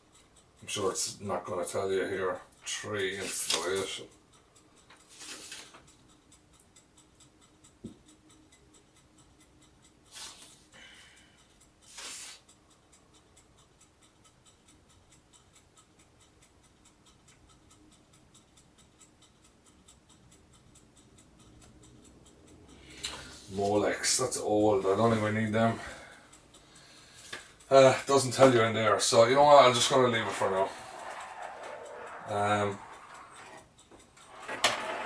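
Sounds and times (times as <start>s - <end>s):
faint ticking: 0.0s - 35.0s
pages rustling: 5.1s - 5.7s.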